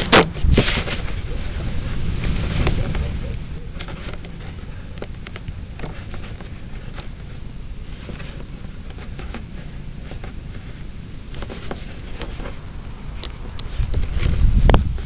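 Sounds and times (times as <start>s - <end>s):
wind buffeting microphone: 0.0s - 6.2s, 12.0s - 15.0s.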